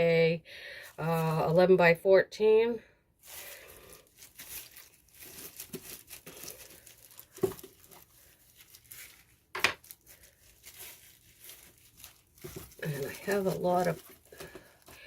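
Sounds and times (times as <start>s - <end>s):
rustling and crinkling: 3.2s - 15.0s.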